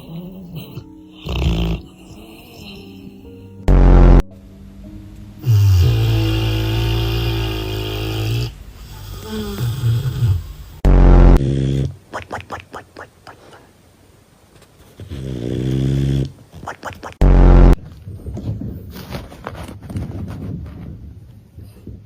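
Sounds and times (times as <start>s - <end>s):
dog snoring: 0.0s - 4.2s, 5.4s - 12.0s, 15.0s - 16.4s.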